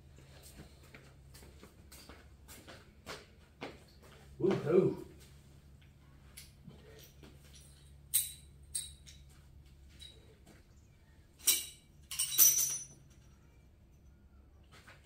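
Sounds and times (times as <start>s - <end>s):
loose metal parts clinking: 6.8s - 10.3s, 11.4s - 13.4s.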